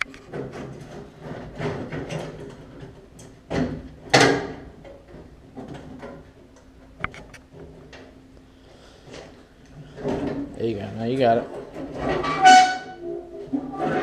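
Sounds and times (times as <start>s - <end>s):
metal parts clanking and scraping: 11.1s - 14.0s.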